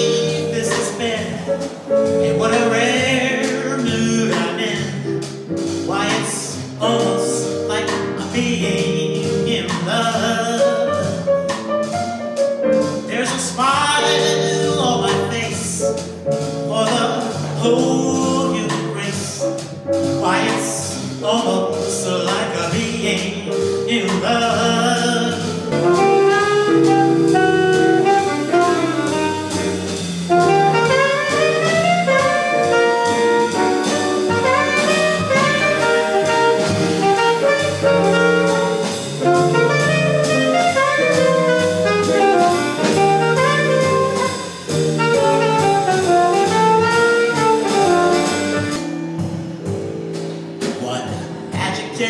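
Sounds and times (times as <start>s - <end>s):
bass line: 0.0s - 52.0s
drum kit cymbals: 0.0s - 52.0s
saxophone melody: 25.6s - 49.3s.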